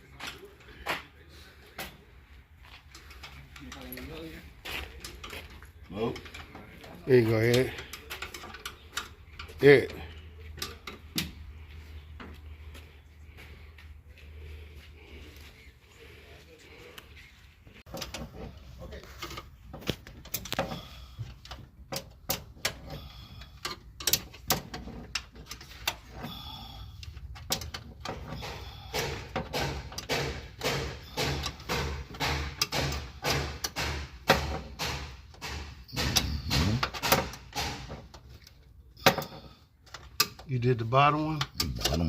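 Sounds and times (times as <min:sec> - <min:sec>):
hand tools clanking on metal: 0:02.8 - 0:11.4, 0:17.9 - 0:38.3.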